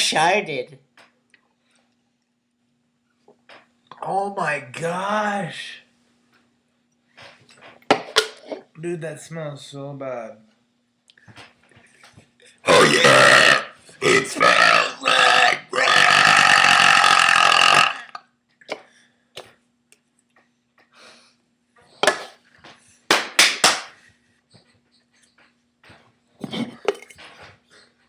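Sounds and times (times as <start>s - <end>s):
person burping loudly: 12.7s - 18.2s.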